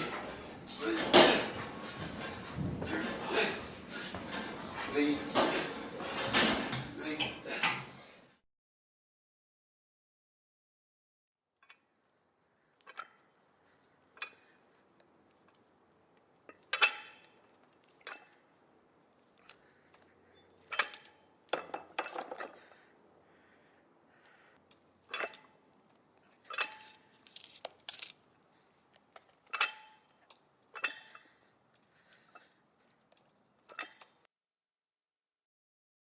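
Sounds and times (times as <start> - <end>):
gym weights clanking: 0.0 - 7.9.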